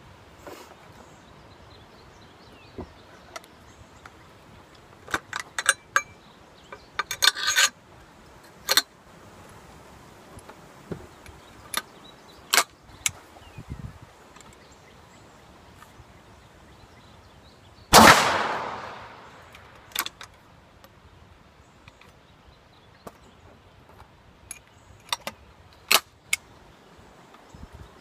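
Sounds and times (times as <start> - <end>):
loud gunshot with echo: 17.9 - 19.4
faint gunshot cracks: 17.9 - 19.8.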